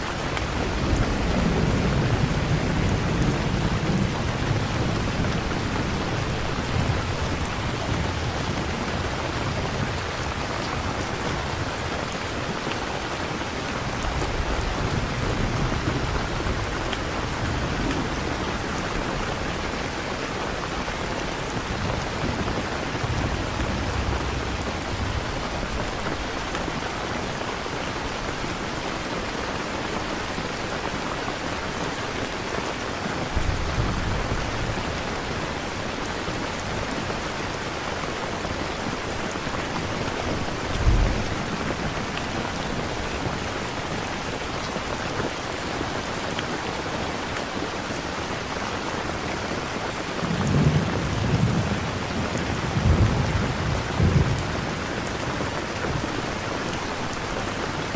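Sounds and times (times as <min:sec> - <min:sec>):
steady rain: 0:00.0 - 0:57.9
distant thunder rolls: 0:40.7 - 0:41.6.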